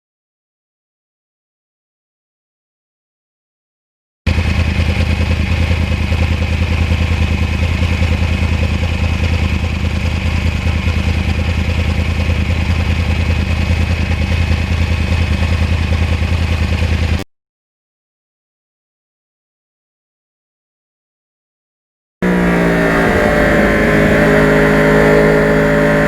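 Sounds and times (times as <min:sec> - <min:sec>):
motorcycle engine running: 0:04.3 - 0:17.2, 0:22.2 - 0:26.0.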